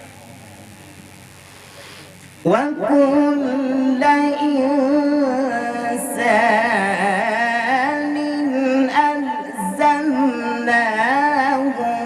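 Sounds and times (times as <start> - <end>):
man reciting melodically: 2.4 - 12.0.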